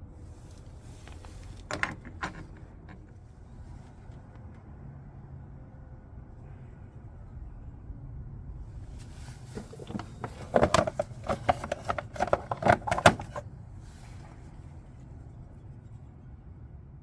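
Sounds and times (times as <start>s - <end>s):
hand tools clicking and clattering: 9.6s - 13.4s.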